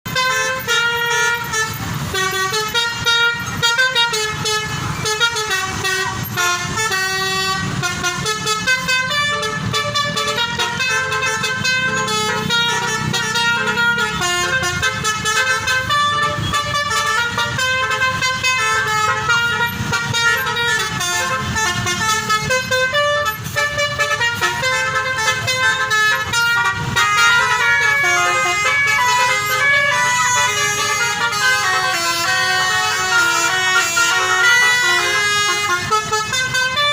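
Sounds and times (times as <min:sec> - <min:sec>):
musical vehicle horns playing tunes: 0:00.0 - 0:36.9.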